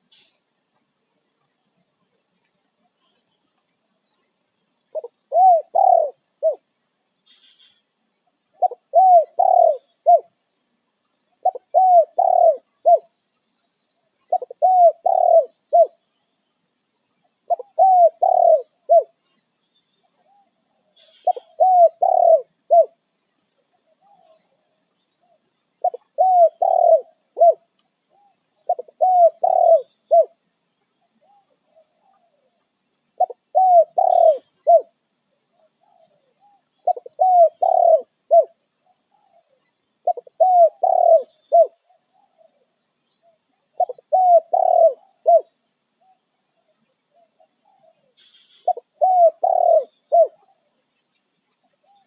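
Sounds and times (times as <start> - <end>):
dove cooing: 4.9 - 6.6, 8.5 - 10.3, 11.4 - 13.1, 14.3 - 16.0, 17.5 - 19.2, 20.3 - 23.0, 25.8 - 30.4, 33.2 - 35.0, 35.8 - 38.5, 39.2 - 42.6, 43.8 - 45.5, 47.2 - 50.7.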